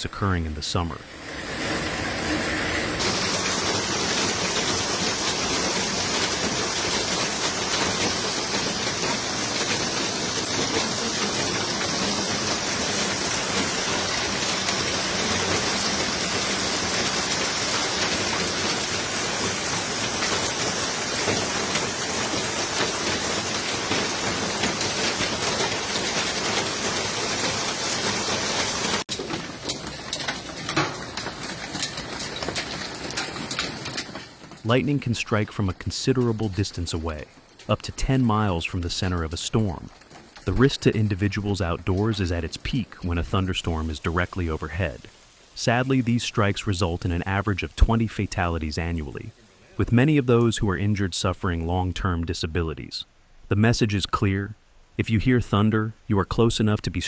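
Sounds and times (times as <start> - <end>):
heavy rain pouring: 0.1 - 51.0.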